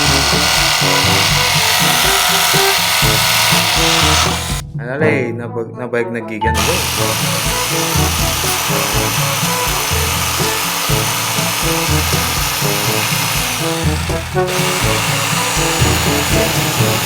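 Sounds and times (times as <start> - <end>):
hissing machine noise: 0.0 - 4.6, 6.6 - 17.0
background music with low beat: 0.0 - 5.4, 6.5 - 17.0.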